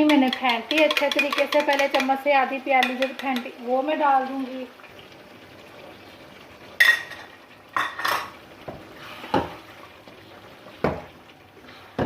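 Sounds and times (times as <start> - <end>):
metal spoon clinking against bowl: 0.0 - 2.2.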